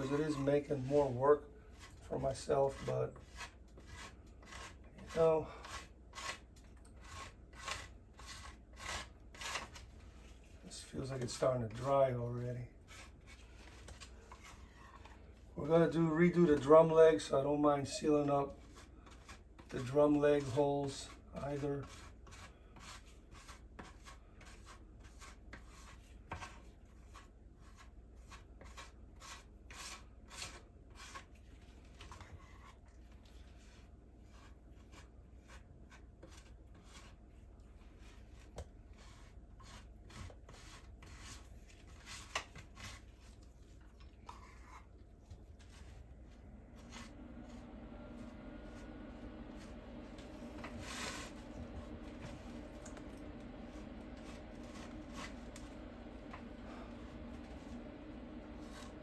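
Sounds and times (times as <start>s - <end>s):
faint steady hum: 0.0s - 59.0s
filler rubbing and scraping on wood: 0.0s - 59.0s.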